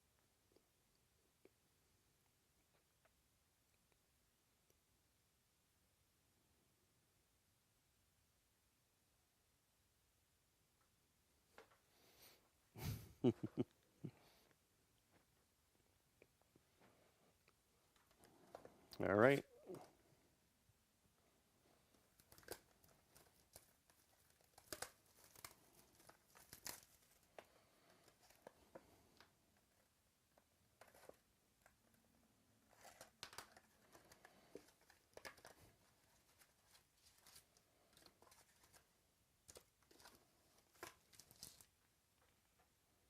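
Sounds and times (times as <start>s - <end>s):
packaging tearing and crinkling: 22.2s - 27.2s, 39.5s - 41.7s.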